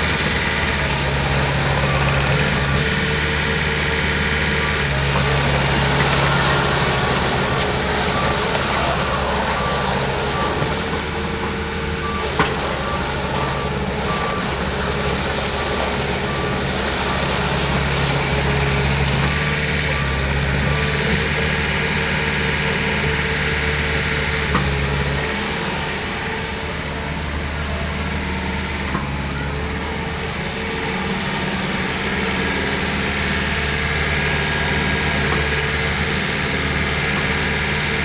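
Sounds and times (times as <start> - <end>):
excavator diesel engine running: 0.0 - 38.0
travel alarm beeping: 4.7 - 11.2.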